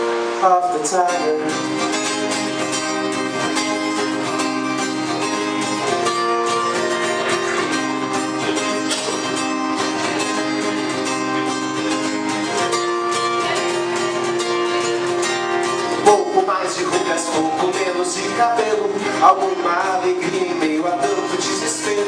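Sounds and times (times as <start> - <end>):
acoustic guitar strumming: 0.0 - 22.0.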